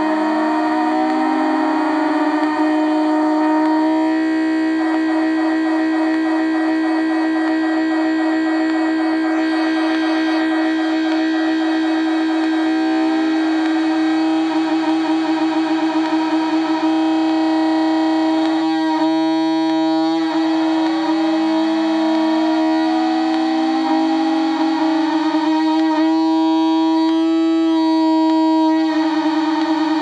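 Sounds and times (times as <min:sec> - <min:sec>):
gliding synthesizer tone: 0:00.0 - 0:06.5
buzzy synthesizer drone: 0:00.0 - 0:30.0
rough stuttering buzz: 0:00.0 - 0:30.0.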